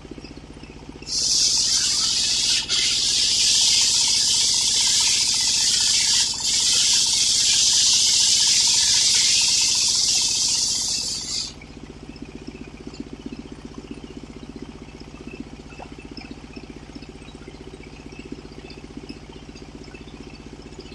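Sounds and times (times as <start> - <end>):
engine running with low pulsing: 0.0 - 20.9
circular saw blade cutting log: 1.1 - 11.6.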